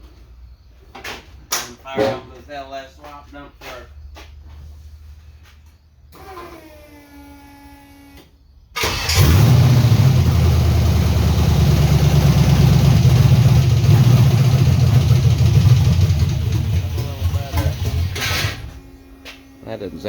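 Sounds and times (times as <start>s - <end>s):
engine running rough: 8.8s - 18.9s
faint steady whine: 18.4s - 20.0s.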